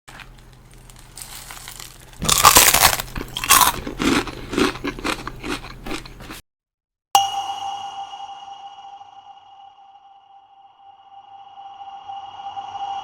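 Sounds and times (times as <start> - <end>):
crunchy chewing: 0.1 - 6.4
loud crunch of biting chicken: 0.1 - 6.4.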